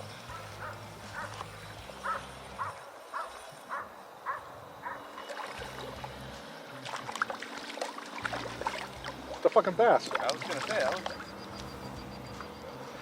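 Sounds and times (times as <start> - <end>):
dog barking: 0.3 - 1.4, 2.0 - 5.1.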